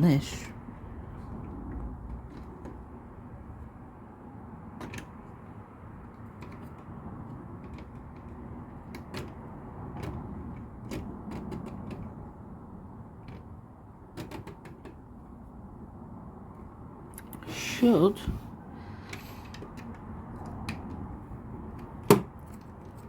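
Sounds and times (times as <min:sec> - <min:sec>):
low background noise: 0:11.6 - 0:23.0.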